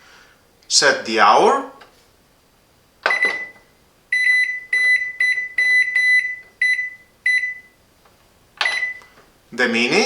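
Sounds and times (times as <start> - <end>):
microwave control panel beeps: 3.0 - 7.8, 8.6 - 9.2.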